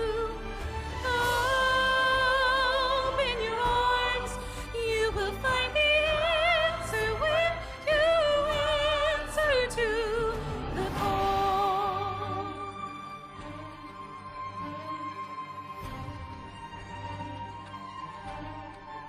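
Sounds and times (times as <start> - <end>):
women singing with vibrato: 0.0 - 14.1
soft instrumental accompaniment: 0.0 - 19.0.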